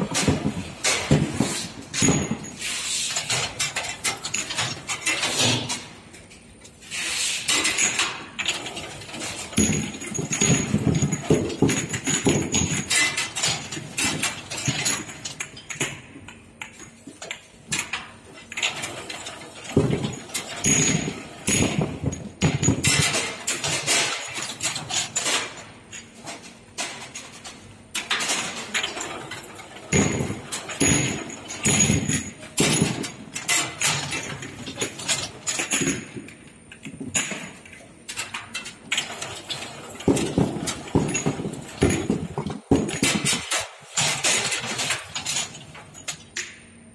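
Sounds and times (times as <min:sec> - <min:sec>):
glass bottles clattering: 0:08.7 - 0:15.9, 0:28.2 - 0:37.8, 0:38.9 - 0:46.5.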